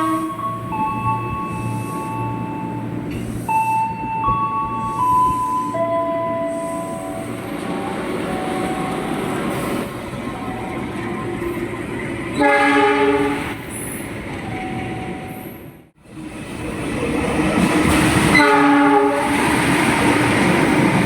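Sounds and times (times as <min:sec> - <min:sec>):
train horn: 0:00.0 - 0:00.4, 0:12.4 - 0:13.5, 0:18.3 - 0:19.4
electric train running on rails: 0:00.0 - 0:21.0.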